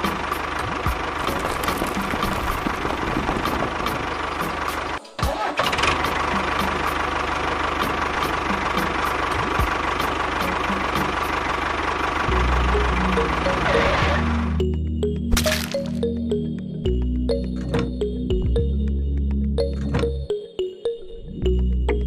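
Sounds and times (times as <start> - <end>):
engine idling: 0.0 - 14.8.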